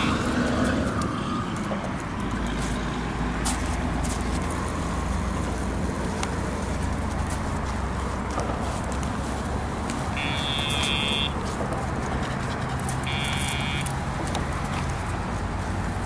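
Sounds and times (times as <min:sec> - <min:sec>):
electronic buzzes: 0:10.1 - 0:11.4, 0:13.1 - 0:13.9.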